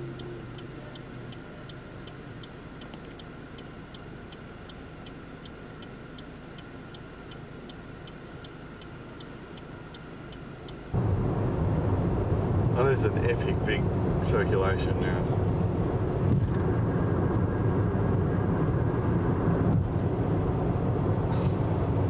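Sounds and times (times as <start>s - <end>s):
turn signal ticking: 0.0s - 11.0s
car engine hum and road noise: 0.0s - 22.0s.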